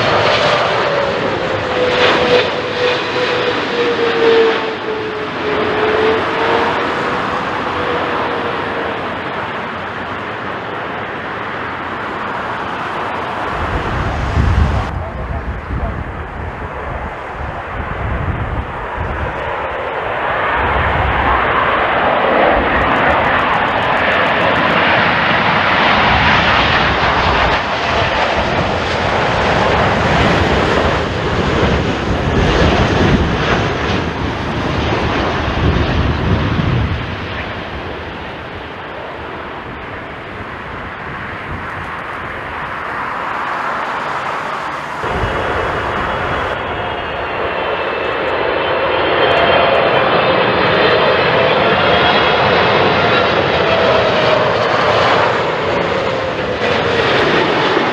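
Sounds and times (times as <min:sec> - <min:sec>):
jet engine noise: 0:00.0 - 0:57.9
jet engine whine: 0:00.0 - 0:57.9
wind buffeting microphone: 0:00.0 - 0:57.9.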